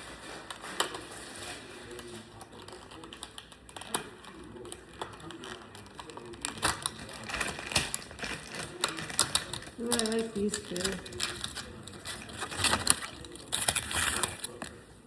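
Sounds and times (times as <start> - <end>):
plastic packaging crackling: 0.0 - 14.8.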